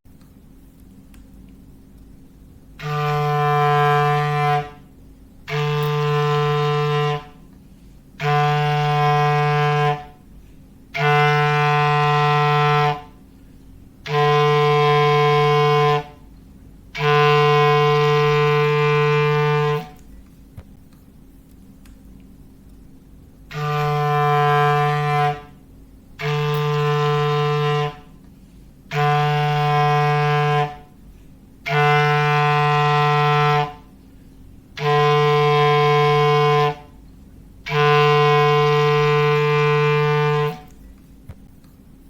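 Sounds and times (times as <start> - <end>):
clarinet low held blasts: 2.8 - 7.6, 8.2 - 13.3, 14.0 - 16.3, 16.9 - 20.0, 23.5 - 28.2, 28.8 - 34.0, 34.7 - 37.0, 37.6 - 40.8.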